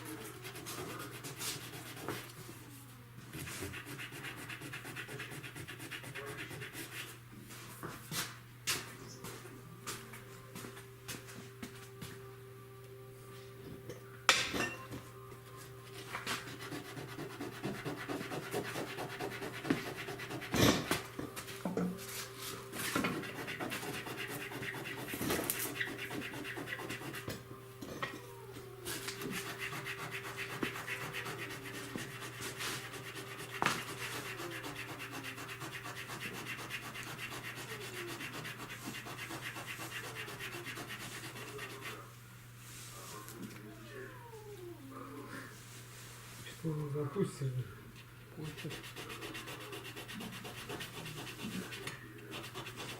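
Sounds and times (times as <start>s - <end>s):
sanding on car bodywork: 3.4s - 7.2s, 16.5s - 20.6s, 22.8s - 27.3s, 29.3s - 42.0s, 48.4s - 52.9s.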